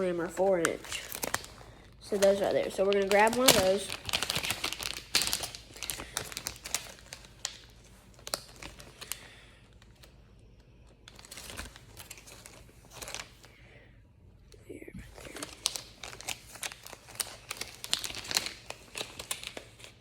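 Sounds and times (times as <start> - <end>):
plastic bag crinkling: 0.0 - 10.1, 11.0 - 13.5, 15.1 - 20.0.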